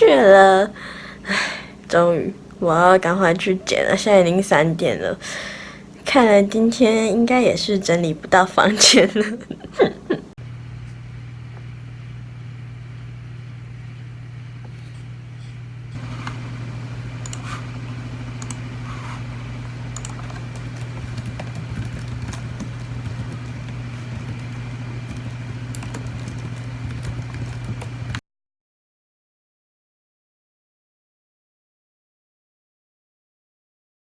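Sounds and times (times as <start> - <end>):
steady low hum: 0.0 - 28.2
faint clicks: 15.9 - 18.7, 19.3 - 28.2.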